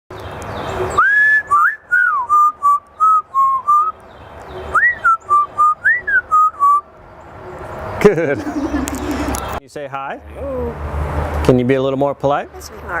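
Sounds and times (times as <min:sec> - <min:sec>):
parrot whistling a tune: 0:01.0 - 0:03.9, 0:04.8 - 0:06.8.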